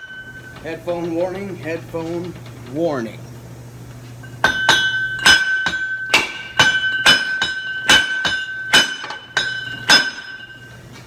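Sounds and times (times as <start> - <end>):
metal ringing high tone: 0.0 - 1.2, 4.2 - 11.0
hammer striking metal hub: 0.0 - 1.4, 4.2 - 10.8.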